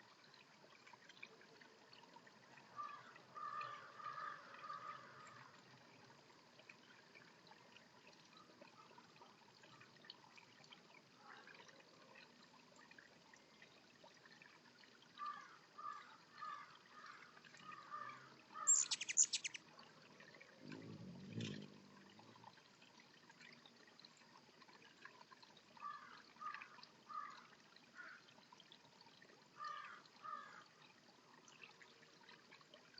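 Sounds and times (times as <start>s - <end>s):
faint trickling water: 0.0s - 32.9s
small birds chirping: 18.6s - 19.6s.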